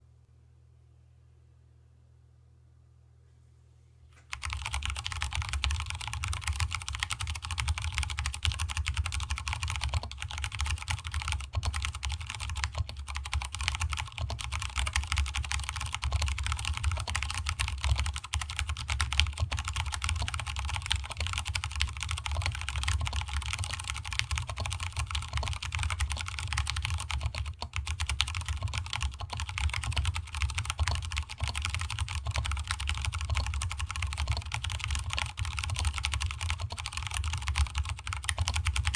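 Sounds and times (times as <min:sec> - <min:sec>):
mechanical keyboard typing: 0:04.3 - 0:38.9.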